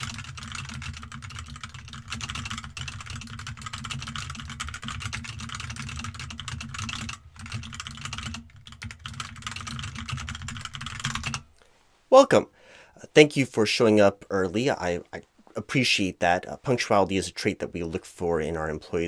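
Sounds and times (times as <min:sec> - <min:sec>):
rapid keyboard typing: 0:00.0 - 0:11.5.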